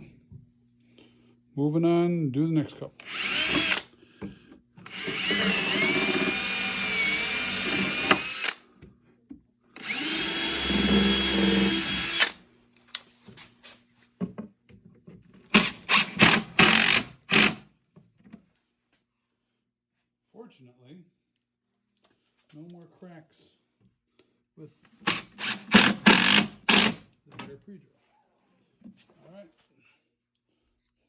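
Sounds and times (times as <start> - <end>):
power drill drilling into wood: 3.0 - 3.9, 4.8 - 8.6, 9.8 - 12.4, 15.6 - 17.6, 25.0 - 27.0.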